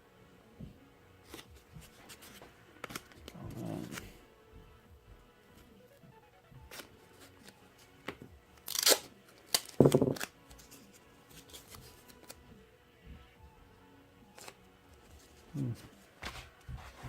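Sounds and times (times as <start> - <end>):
tape ripping off a roll: 8.6 - 10.3.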